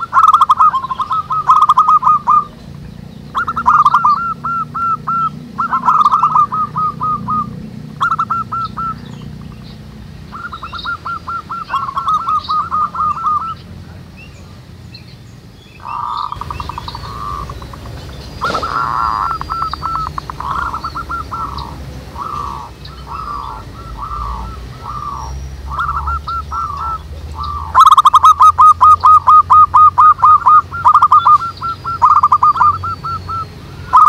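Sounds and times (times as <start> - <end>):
doves cooing: 0.0 - 14.6, 15.8 - 34.0
small birds chirping: 0.0 - 34.0.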